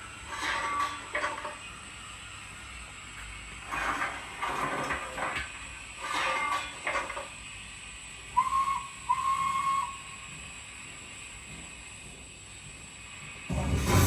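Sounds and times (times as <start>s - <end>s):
steam locomotive whistle: 8.3s - 10.2s
steam hissing bursts: 13.4s - 14.0s.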